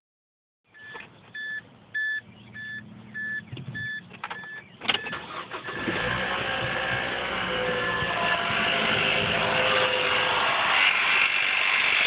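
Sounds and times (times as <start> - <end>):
dashboard chime beeping: 0.8 - 5.9
engine running with chain rattle: 3.5 - 12.0.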